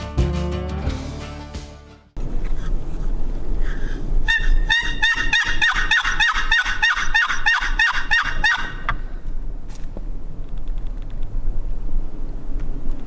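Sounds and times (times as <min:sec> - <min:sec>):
turkey yelping: 0:02.2 - 0:09.2.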